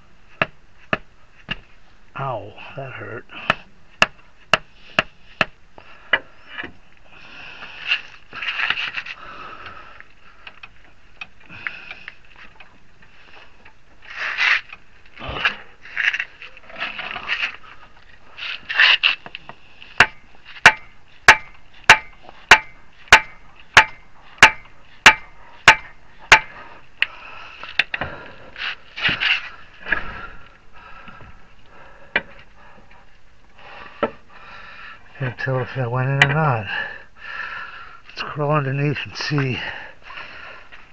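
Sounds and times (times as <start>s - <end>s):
tools and parts scraping: 7.8s - 9.2s, 11.8s - 26.8s, 27.6s - 30.1s.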